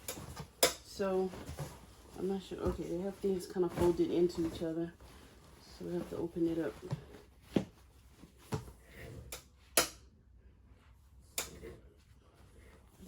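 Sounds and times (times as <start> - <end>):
clothes rustling: 0.0 - 9.3.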